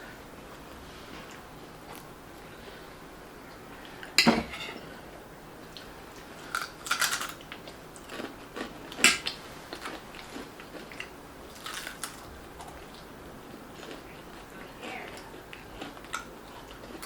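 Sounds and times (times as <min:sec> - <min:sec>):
chewing: 0:05.8 - 0:13.1, 0:13.7 - 0:17.0.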